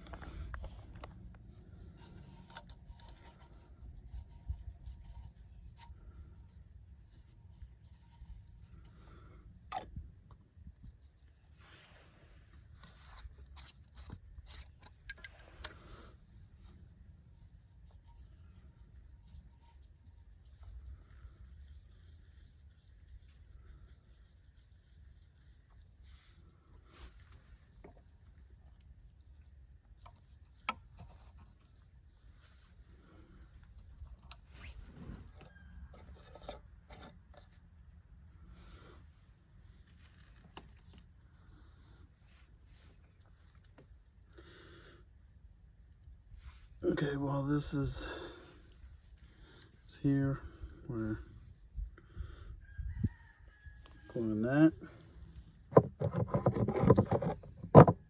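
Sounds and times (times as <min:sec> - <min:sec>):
plastic pipe fittings scraping: 0:00.0 - 0:16.8, 0:17.6 - 0:37.7, 0:39.8 - 0:41.2, 0:53.6 - 0:58.0.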